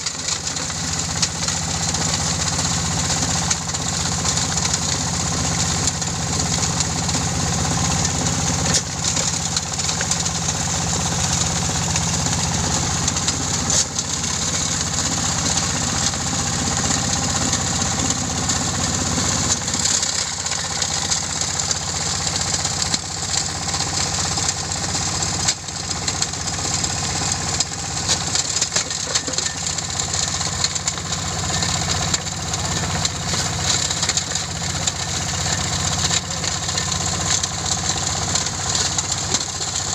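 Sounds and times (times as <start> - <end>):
stone-grinding machine running: 0.0 - 39.9.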